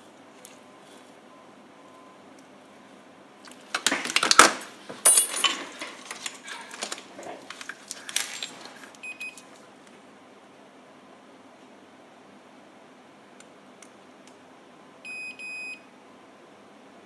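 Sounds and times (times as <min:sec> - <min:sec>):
small tools clattering on workbench: 0:03.5 - 0:09.0.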